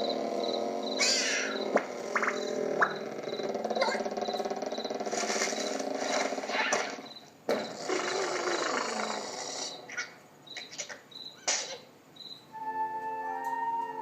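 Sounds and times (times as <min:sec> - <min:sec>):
cartoon buzzy noise: 0:01.0 - 0:04.2, 0:07.6 - 0:10.2.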